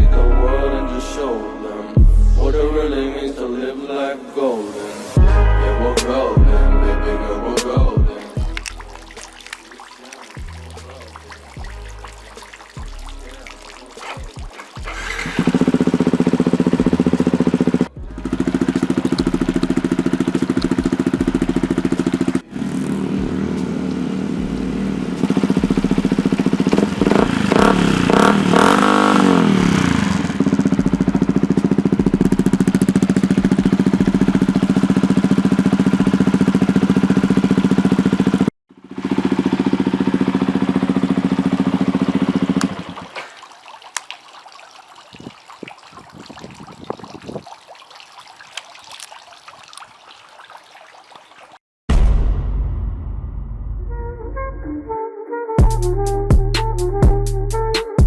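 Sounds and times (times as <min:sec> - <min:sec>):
motorcycle engine idling: 0:14.0 - 0:43.0.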